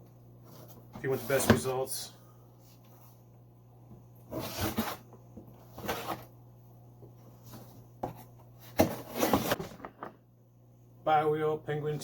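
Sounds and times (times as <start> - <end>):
knife cutting cardboard box: 4.3 - 5.1.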